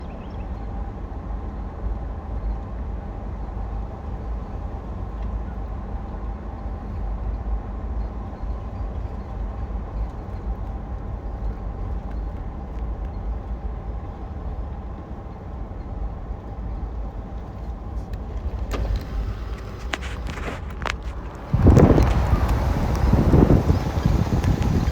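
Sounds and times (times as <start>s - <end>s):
vehicle driving rumble: 17.3s - 24.9s
sharp clicks: 18.0s - 24.9s.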